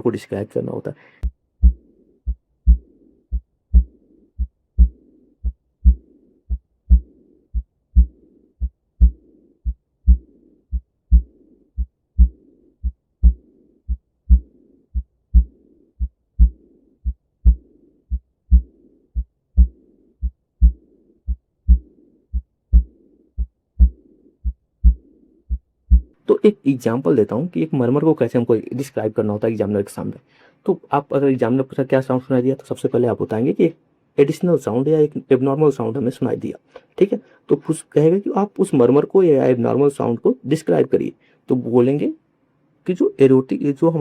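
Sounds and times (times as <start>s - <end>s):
heartbeat through stethoscope: 1.2s - 26.2s
soft high-pitched heart murmur: 1.6s - 26.2s.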